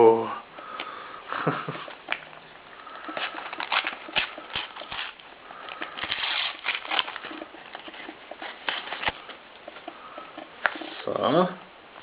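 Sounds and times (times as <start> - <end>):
paper crinkling and rustling: 3.0 - 11.2.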